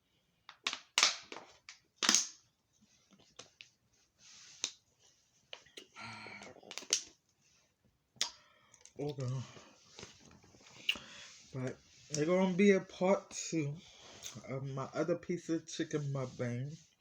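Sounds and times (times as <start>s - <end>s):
mouth smacks: 8.2s - 8.4s, 10.7s - 11.2s.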